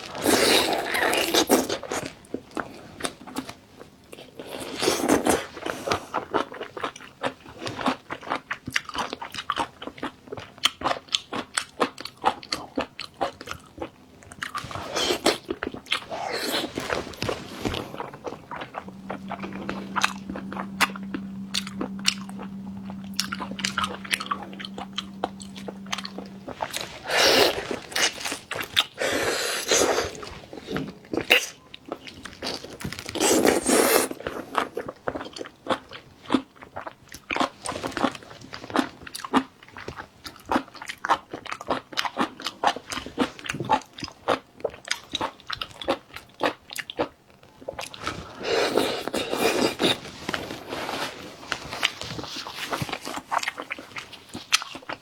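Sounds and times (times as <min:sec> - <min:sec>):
wet chewing and crunching: 0:00.0 - 0:55.0
steady low hum: 0:15.2 - 0:31.4.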